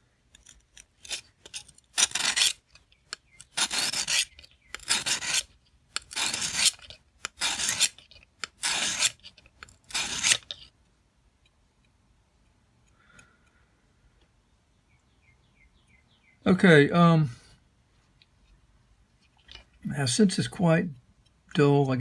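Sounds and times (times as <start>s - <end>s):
knife scraping on sharpening stone: 0.4s - 10.7s.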